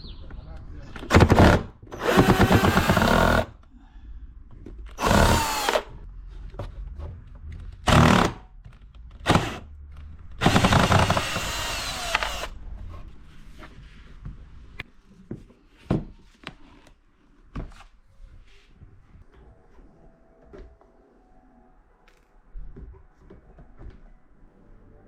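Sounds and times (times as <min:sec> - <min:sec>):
power drill running: 0:01.3 - 0:03.5, 0:05.0 - 0:05.9, 0:07.9 - 0:08.4, 0:09.2 - 0:09.6, 0:10.4 - 0:12.6.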